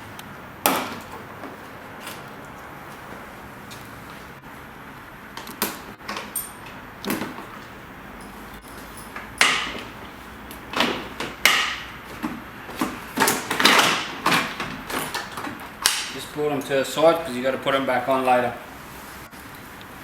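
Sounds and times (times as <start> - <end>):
plastic scraping and rattling: 10.7 - 16.1.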